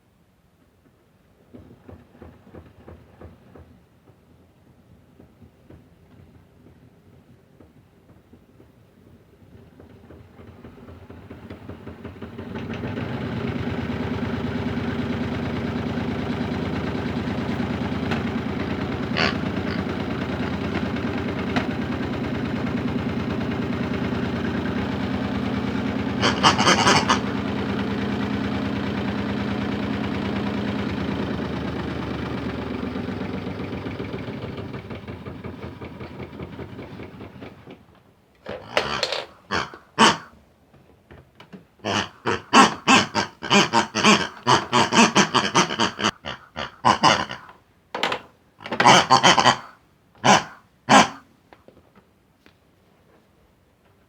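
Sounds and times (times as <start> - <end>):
toy washing machine motor humming: 10.7 - 37.8, 38.4 - 40.3, 41.8 - 51.2.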